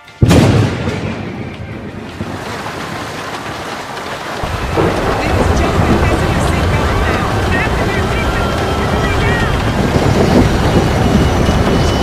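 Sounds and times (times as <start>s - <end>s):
jet engines rumbling in cabin: 3.4s - 12.0s.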